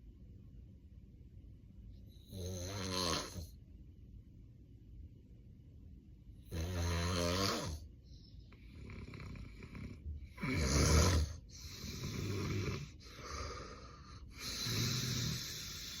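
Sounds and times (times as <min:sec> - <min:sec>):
man snoring heavily: 0:02.3 - 0:03.4, 0:06.5 - 0:07.8, 0:08.8 - 0:16.0.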